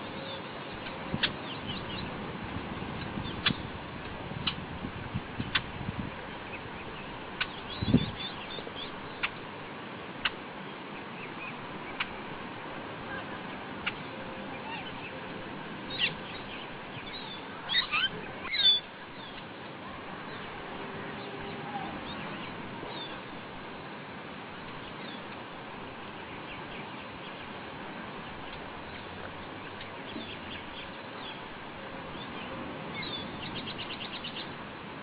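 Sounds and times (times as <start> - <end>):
birds chirping: 0.0 - 3.8, 6.3 - 12.4, 13.0 - 23.6, 24.5 - 34.6
steady hiss: 0.0 - 35.0.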